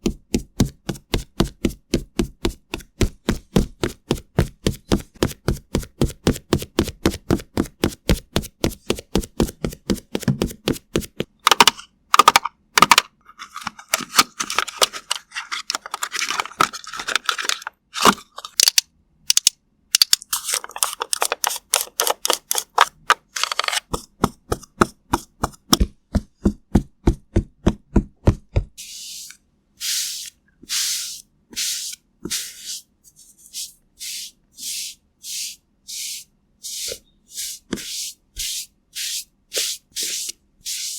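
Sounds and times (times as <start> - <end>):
brush swishes: 28.8 - 40.9
scratchy rubbing: 28.8 - 40.9.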